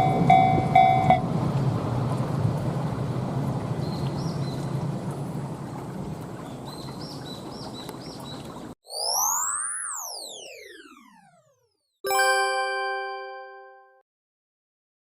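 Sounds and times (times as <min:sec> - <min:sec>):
train wheels rumbling on rail: 0:00.0 - 0:05.5
synthesized rising chime: 0:08.9 - 0:13.8.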